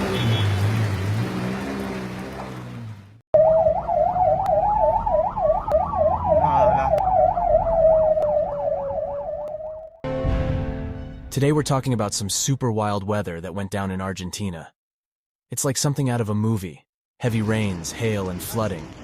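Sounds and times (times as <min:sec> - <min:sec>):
low engine hum: 0:00.0 - 0:03.2
emergency vehicle siren warbling: 0:03.4 - 0:10.0.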